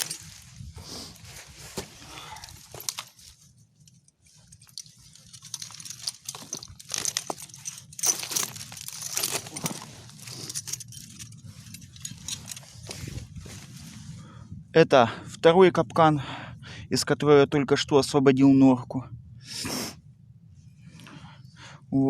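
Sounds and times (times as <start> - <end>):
rustling and crunching: 0.0 - 14.3
metal chain clinks: 4.5 - 12.9.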